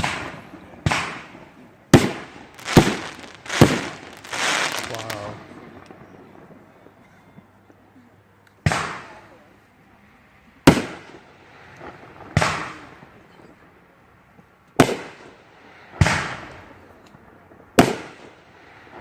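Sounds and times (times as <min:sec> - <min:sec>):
fireworks bangs: 0:02.5 - 0:05.5.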